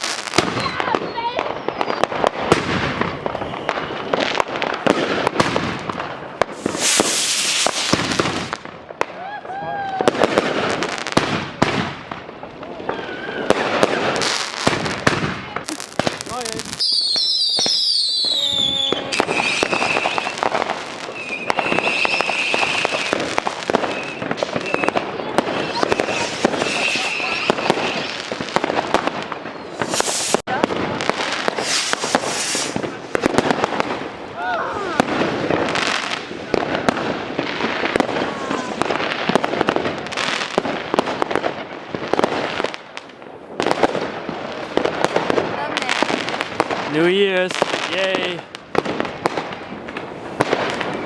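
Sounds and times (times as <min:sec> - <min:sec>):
firework bangs and crackling: 0:00.0 - 0:51.0
shrill whistling fireworks: 0:00.0 - 0:51.0
firework whistle falling in pitch: 0:16.8 - 0:20.5, 0:21.1 - 0:23.1, 0:23.8 - 0:25.0.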